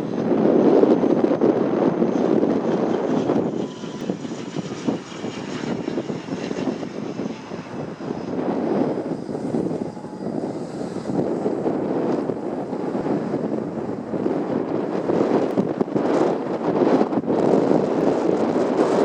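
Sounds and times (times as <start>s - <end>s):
gusty strong wind: 0.0s - 19.0s
turboprop engines rumbling: 0.0s - 19.0s
faint high whine: 3.0s - 15.5s.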